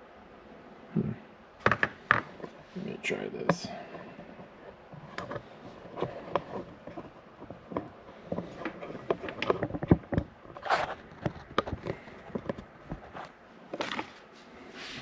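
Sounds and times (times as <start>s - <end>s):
objects being handled clicking: 3.9s - 14.2s.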